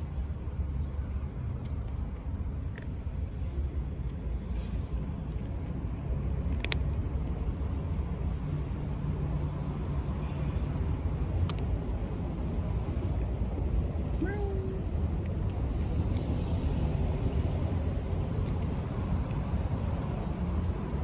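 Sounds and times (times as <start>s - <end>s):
low outdoor rumble: 0.0s - 21.0s.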